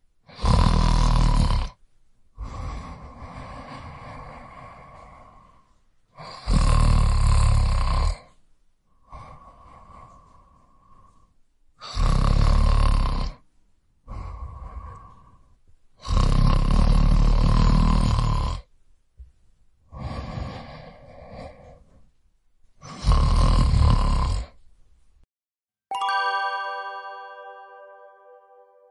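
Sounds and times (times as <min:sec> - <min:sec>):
man snoring: 0:00.3 - 0:01.8, 0:02.4 - 0:05.6, 0:06.2 - 0:08.4, 0:09.0 - 0:11.0, 0:11.8 - 0:13.4, 0:14.1 - 0:18.7, 0:19.9 - 0:22.0, 0:22.8 - 0:24.6.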